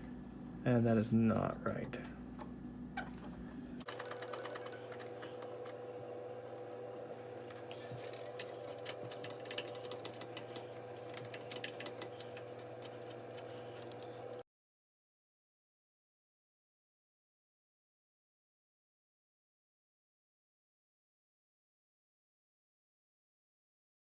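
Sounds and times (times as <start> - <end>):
electrical hum: 0.0 - 14.4.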